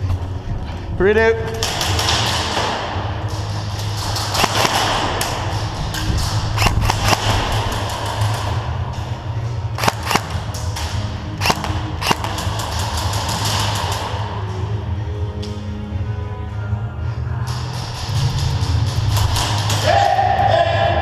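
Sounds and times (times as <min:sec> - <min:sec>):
airsoft gun shots: 0:04.3 - 0:05.4, 0:06.6 - 0:08.4, 0:09.8 - 0:10.4, 0:11.4 - 0:14.1.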